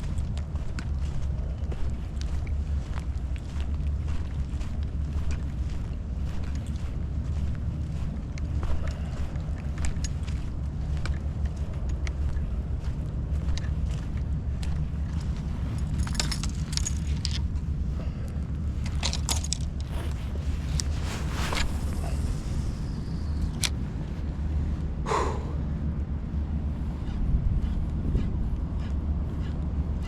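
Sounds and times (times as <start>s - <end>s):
gear clicking and jangling: 0.0s - 23.8s
wind rumble on microphone: 0.0s - 30.0s.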